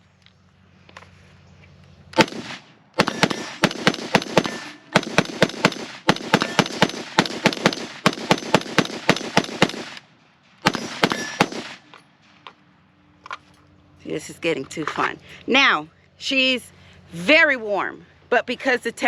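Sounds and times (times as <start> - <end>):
rifle gunshots: 2.2 - 10.0, 10.6 - 11.9.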